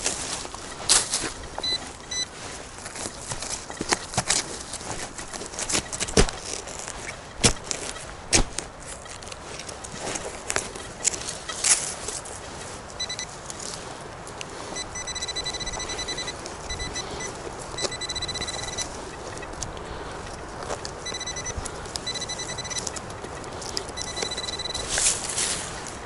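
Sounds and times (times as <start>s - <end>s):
metal detector beeping: 0.0s - 8.1s, 13.0s - 13.8s, 14.6s - 25.8s
clicks and knocks of digging: 0.0s - 26.0s.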